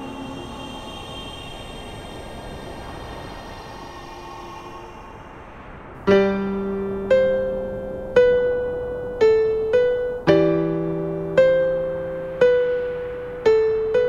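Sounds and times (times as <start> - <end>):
slow piano melody: 0.0 - 0.8, 6.0 - 14.0.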